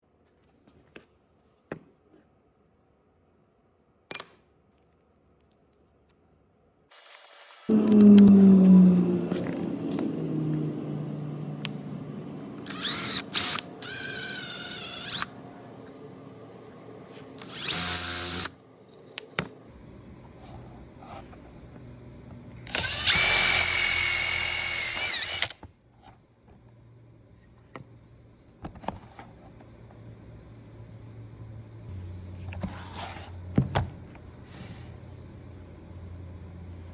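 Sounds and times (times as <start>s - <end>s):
electric drill running: 7.7s - 18.6s, 22.6s - 25.6s.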